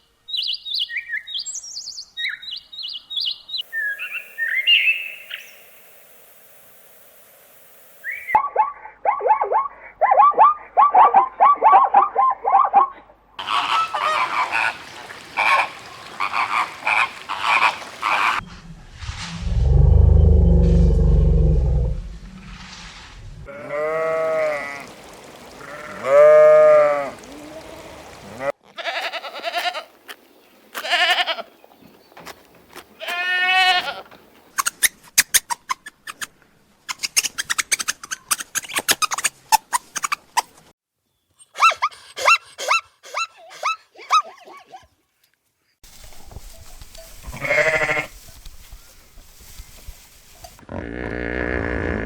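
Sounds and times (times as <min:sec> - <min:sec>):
harsh honking animal calls: 0:13.4 - 0:18.4, 0:23.5 - 0:29.8
farm animal bleating: 0:23.5 - 0:24.9, 0:25.6 - 0:30.0, 0:30.7 - 0:31.6, 0:33.0 - 0:34.1, 0:47.2 - 0:48.2.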